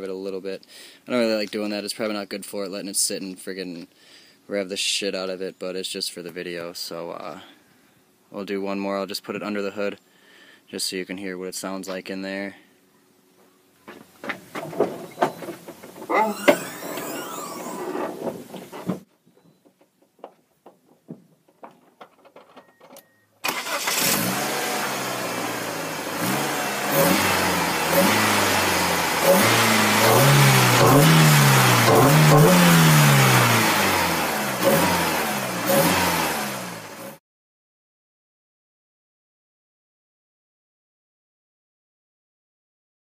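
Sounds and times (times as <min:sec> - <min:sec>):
car engine starting and revving: 0:23.4 - 0:37.2.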